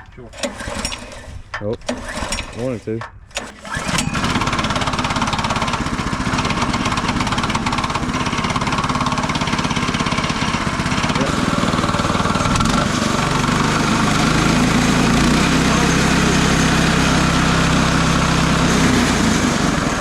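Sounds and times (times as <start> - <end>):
small gasoline engine running: 0.3 - 2.6, 3.3 - 20.0.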